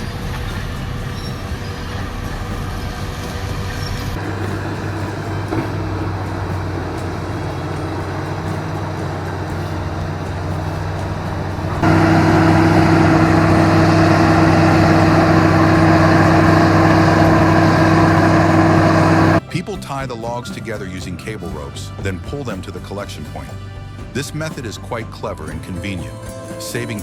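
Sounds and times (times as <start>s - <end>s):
heavy vehicle engine running: 0.0s - 19.4s.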